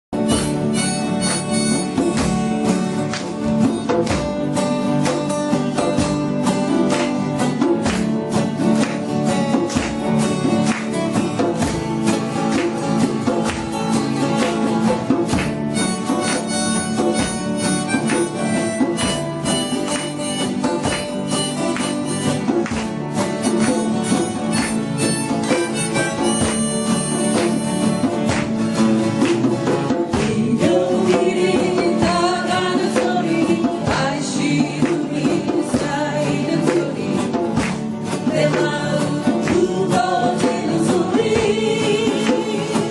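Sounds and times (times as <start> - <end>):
harmonica melody: 0.2 - 2.2, 15.7 - 22.6, 23.6 - 28.2
acoustic guitar strumming: 0.2 - 42.9.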